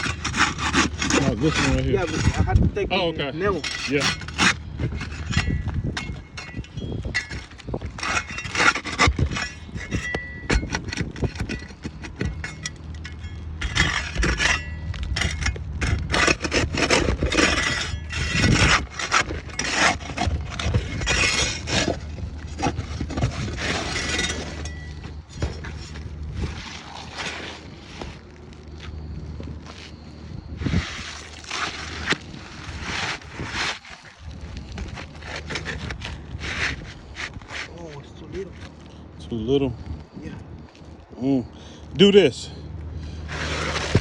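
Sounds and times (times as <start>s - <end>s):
scraping on roof shingles: 7.3s - 12.6s, 13.7s - 28.4s, 30.6s - 38.8s, 43.0s - 44.0s.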